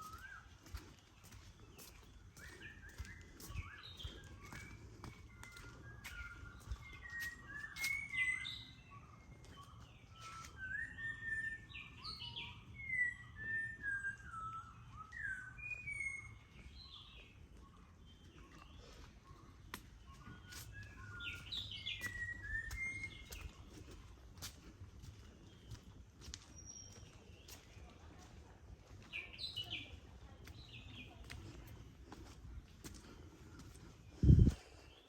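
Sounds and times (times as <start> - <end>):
birds singing: 0.0 - 35.0.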